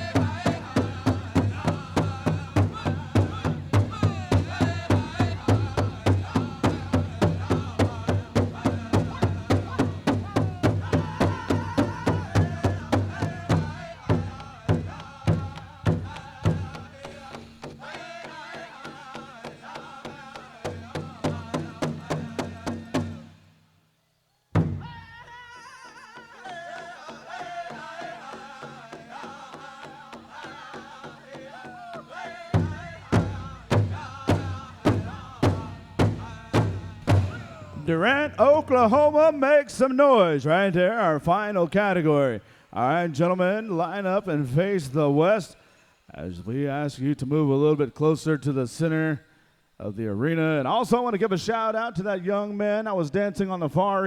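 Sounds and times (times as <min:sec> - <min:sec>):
large drum beating: 0:00.0 - 0:17.7, 0:24.6 - 0:25.0, 0:32.5 - 0:39.1
group of men singing: 0:00.0 - 0:23.4, 0:24.8 - 0:45.5.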